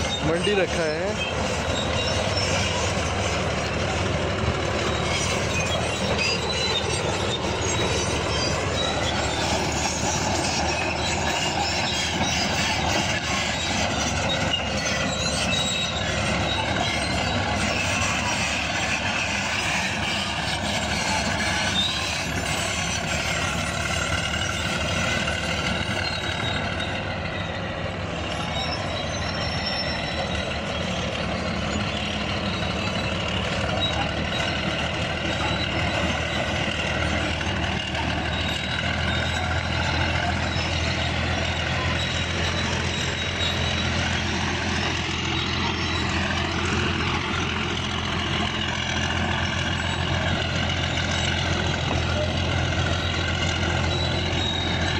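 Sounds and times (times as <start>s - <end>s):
bulldozer diesel engine running: 0.0s - 54.9s.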